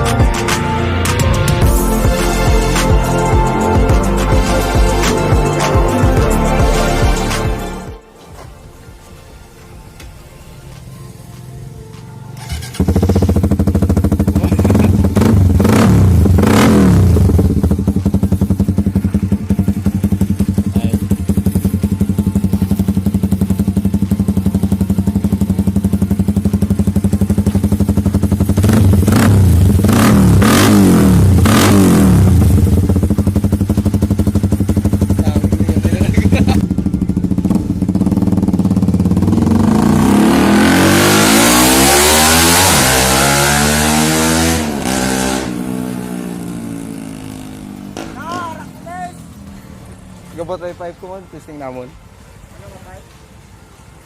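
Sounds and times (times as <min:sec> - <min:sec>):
motorcycle engine idling loud: 0:12.4 - 0:40.3.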